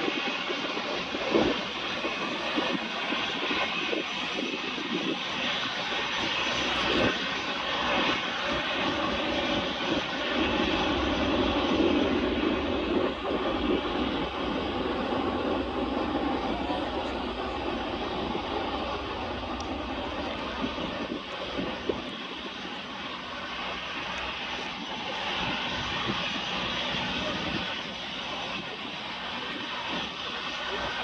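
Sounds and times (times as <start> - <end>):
airliner engine and rushing air: 0.0 - 31.0
low rumble: 10.4 - 27.4.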